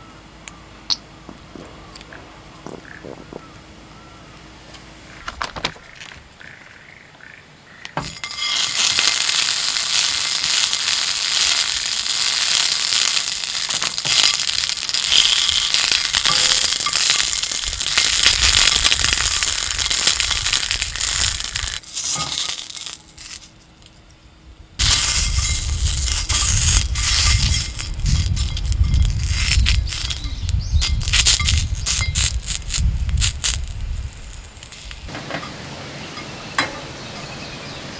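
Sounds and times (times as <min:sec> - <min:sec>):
low rumble of flame: 0:01.1 - 0:06.4, 0:08.2 - 0:37.9
wood fire crackling and popping: 0:08.0 - 0:23.9, 0:24.8 - 0:35.4.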